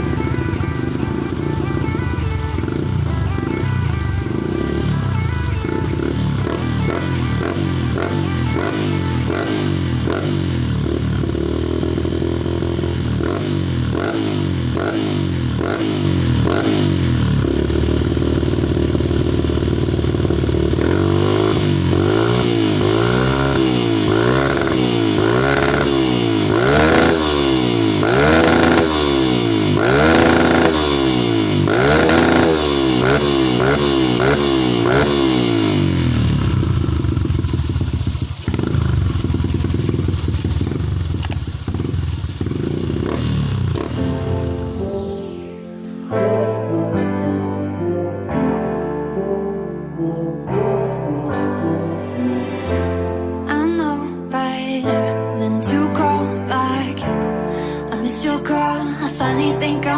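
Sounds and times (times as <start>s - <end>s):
motorcycle engine revving: 0.0s - 45.7s.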